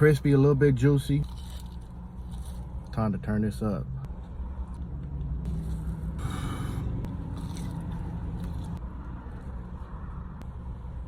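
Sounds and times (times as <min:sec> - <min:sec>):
steady low hum: 0:00.0 - 0:11.0
chewing: 0:07.3 - 0:08.8.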